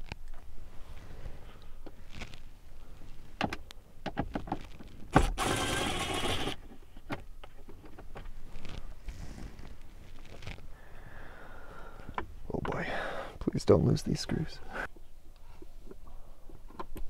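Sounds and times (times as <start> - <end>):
cordless screwdriver motor: 5.2 - 6.6.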